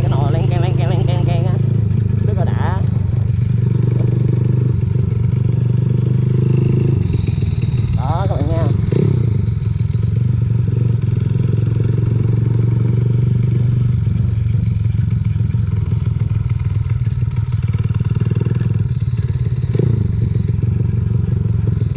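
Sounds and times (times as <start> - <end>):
mini bike engine running: 0.0 - 21.9
dry clutch clattering: 6.5 - 12.0.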